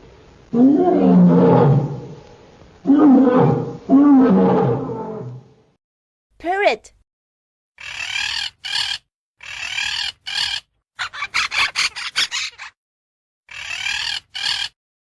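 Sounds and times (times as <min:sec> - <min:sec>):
parrot squawking: 0:07.8 - 0:12.8, 0:13.5 - 0:14.8.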